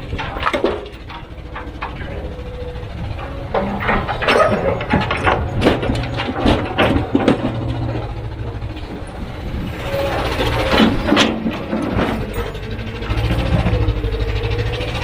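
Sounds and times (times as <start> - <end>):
diesel engine rumbling: 0.0 - 15.0
metal clanks and knocks: 0.0 - 15.0.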